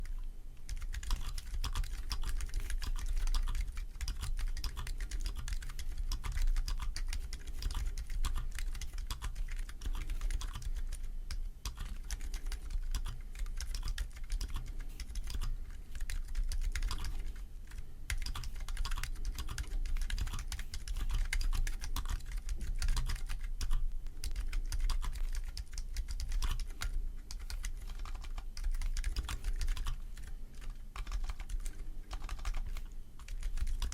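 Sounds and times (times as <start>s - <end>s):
muted keyboard clicks: 0.6s - 33.9s.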